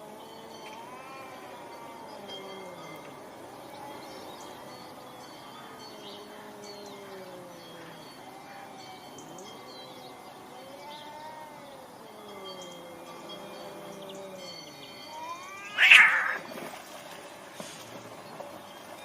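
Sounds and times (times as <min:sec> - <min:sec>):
cats yowling: 0:00.5 - 0:04.3, 0:05.7 - 0:16.5
birds chirping: 0:02.2 - 0:16.5.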